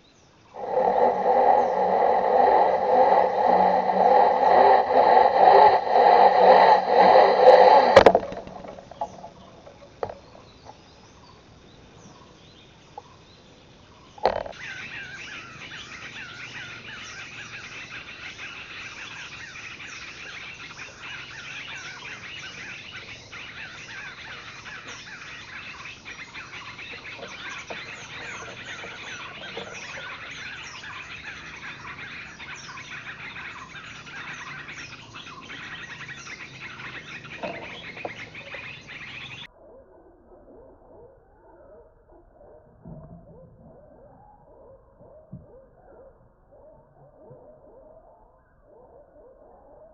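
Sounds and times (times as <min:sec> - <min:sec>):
songbirds chirping: 0:00.0 - 0:39.5.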